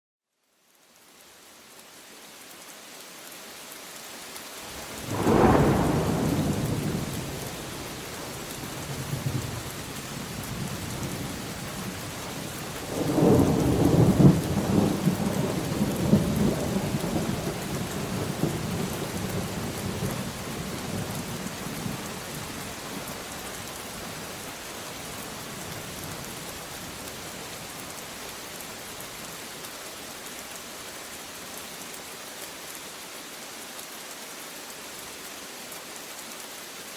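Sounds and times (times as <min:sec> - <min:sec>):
steady rain falling: 0:00.3 - 0:36.9
rolling thunder with cracks: 0:04.8 - 0:11.4, 0:12.9 - 0:22.0
thunderclap: 0:05.0 - 0:07.5.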